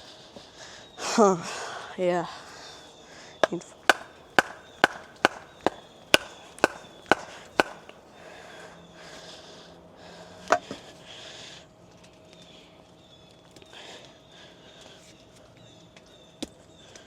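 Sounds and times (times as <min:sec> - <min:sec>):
rock pounding on axe: 0:03.4 - 0:08.0.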